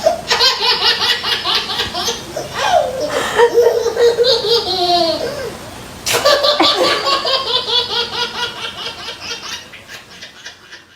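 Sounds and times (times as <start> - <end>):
laughter in quick rhythmic bursts: 6.1 - 8.3.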